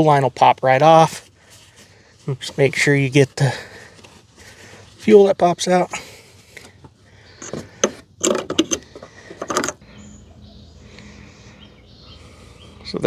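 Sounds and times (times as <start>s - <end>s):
plastic fittings clicking and rattling: 7.4s - 9.8s.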